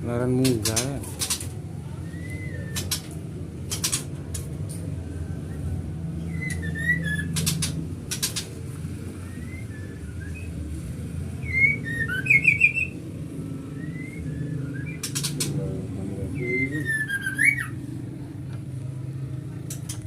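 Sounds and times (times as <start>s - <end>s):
steady low hum: 0.0s - 20.0s
rattle of clicks: 0.4s - 1.6s, 2.8s - 4.8s, 7.3s - 8.6s, 19.6s - 20.0s
birds whistling and chirping: 0.5s - 4.4s, 5.2s - 17.9s.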